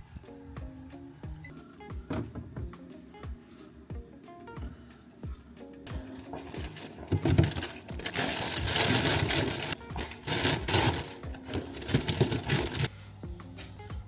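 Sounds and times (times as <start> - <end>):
plastic bags crinkling and rustling: 6.1 - 12.9.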